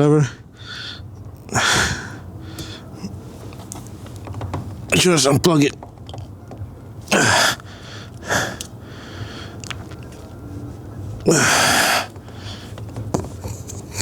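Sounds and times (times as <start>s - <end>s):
man exhaling hard with effort: 0.6s - 3.2s, 7.1s - 9.6s, 11.3s - 12.7s.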